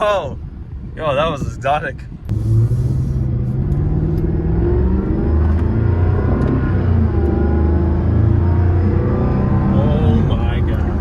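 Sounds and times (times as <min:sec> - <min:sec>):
car engine droning: 0:02.3 - 0:11.0.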